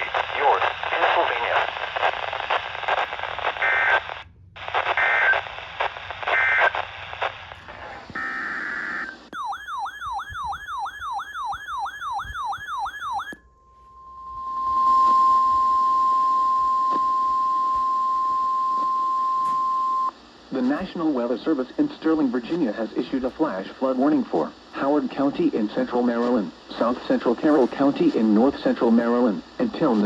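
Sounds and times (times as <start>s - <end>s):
radio static: 0.0s - 9.4s, 20.1s - 30.0s.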